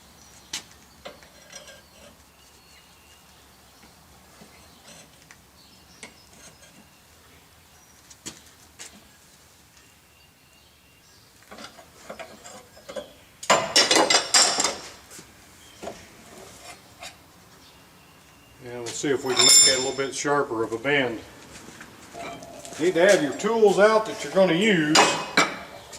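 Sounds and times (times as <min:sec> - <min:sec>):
metal tools clinking and rattling: 0:01.0 - 0:02.2, 0:19.0 - 0:20.1, 0:22.2 - 0:25.9
ringing metal clatter: 0:19.2 - 0:20.1, 0:22.2 - 0:23.7.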